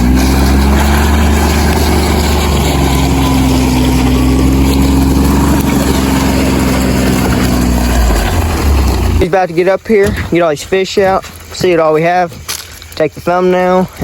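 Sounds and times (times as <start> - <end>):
engine running steadily: 0.0 - 10.3.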